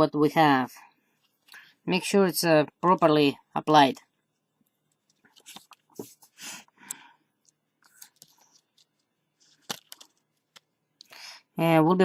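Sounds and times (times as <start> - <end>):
tape crinkling and rustling: 4.7 - 6.3, 7.4 - 10.7.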